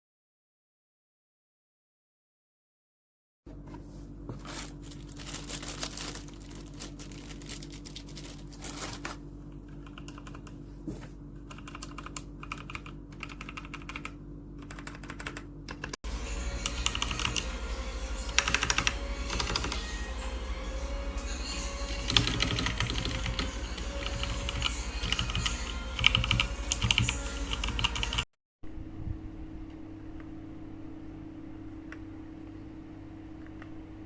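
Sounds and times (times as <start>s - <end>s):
mechanical keyboard typing: 9.7s - 10.6s, 11.4s - 16.0s, 16.6s - 17.4s, 18.3s - 19.8s, 22.1s - 28.2s
low hum: 15.4s - 34.0s.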